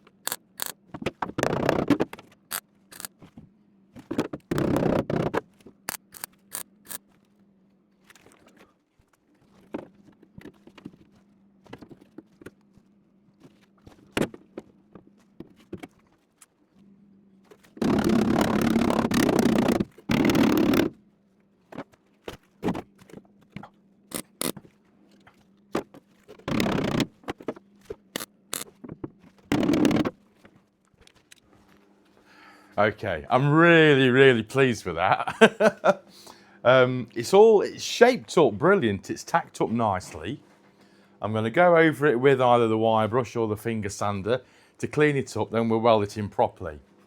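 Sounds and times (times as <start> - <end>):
steady low hum: 31.3 - 47.0.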